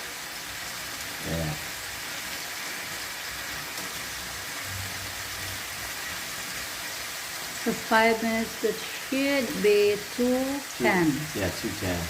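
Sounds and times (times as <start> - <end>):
chicken sizzling in a pan: 0.0 - 12.0.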